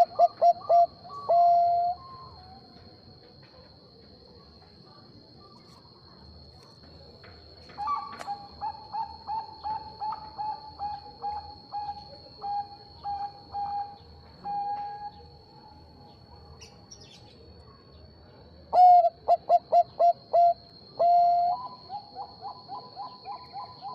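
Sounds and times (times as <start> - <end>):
dove staccato coos: 0.0 - 2.1.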